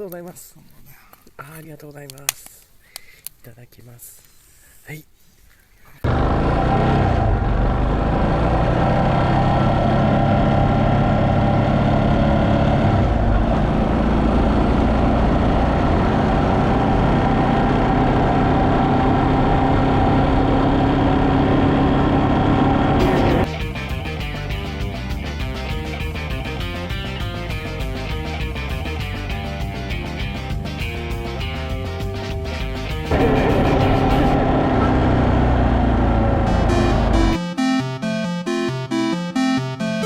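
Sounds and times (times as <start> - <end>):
motorcycle engine running: 6.0 - 24.0, 32.5 - 37.4.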